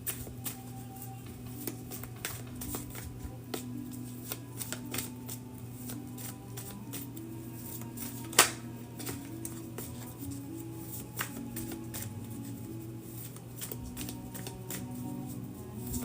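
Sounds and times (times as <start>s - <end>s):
soft background music: 0.0s - 16.0s.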